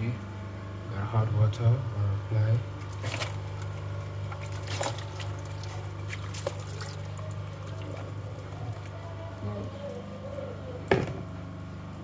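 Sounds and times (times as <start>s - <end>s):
steady low hum: 0.0s - 12.0s
water splashes: 2.8s - 9.7s
water trickling onto ice: 2.8s - 9.7s.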